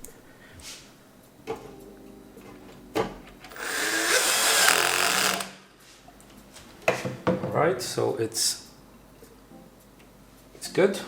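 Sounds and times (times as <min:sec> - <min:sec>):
harsh rasping whir: 0:03.5 - 0:05.6.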